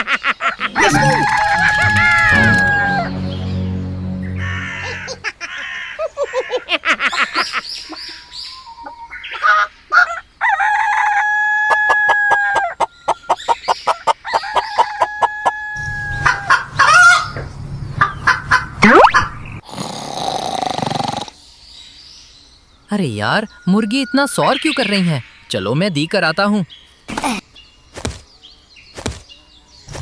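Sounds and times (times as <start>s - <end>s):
rooster crowing: 0.8s - 3.2s, 10.4s - 12.8s, 14.3s - 17.4s.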